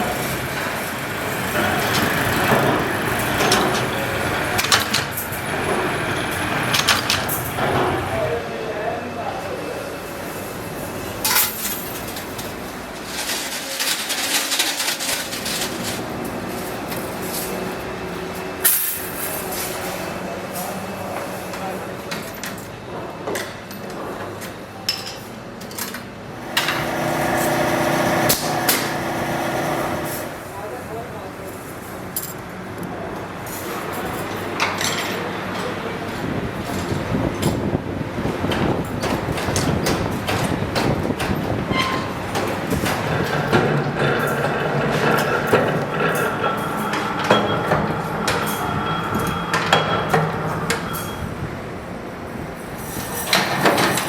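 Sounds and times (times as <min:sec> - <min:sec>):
spot welder machine noise: 0:00.0 - 0:08.4, 0:10.1 - 0:20.2, 0:26.2 - 0:32.9, 0:38.3 - 0:52.1.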